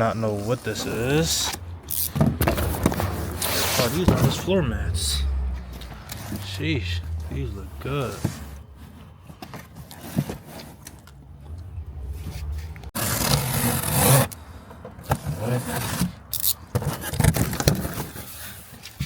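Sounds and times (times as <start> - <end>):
cardboard packaging scraping and rustling: 0.3 - 4.2, 8.0 - 11.1, 12.2 - 14.3, 15.2 - 19.0.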